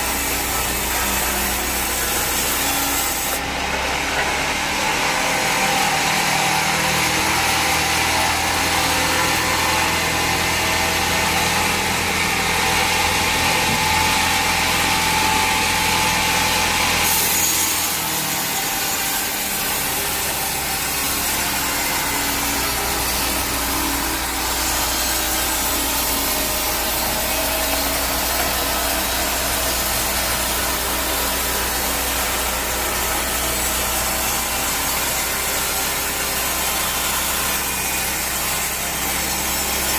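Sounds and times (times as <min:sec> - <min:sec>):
saw cutting through log: 0:00.0 - 0:39.9.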